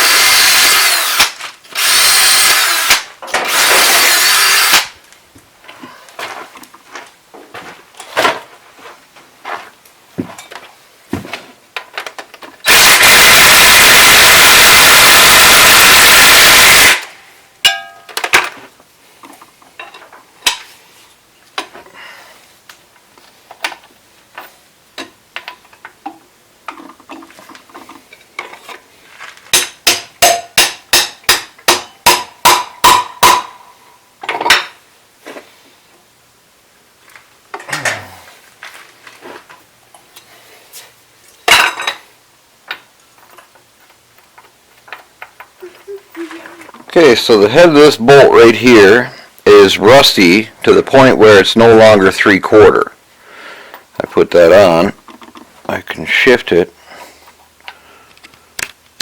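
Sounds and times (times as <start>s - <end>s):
power tool running: 0.0s - 4.9s, 12.6s - 17.1s
sharp metal taps: 17.6s - 18.2s, 29.5s - 33.6s.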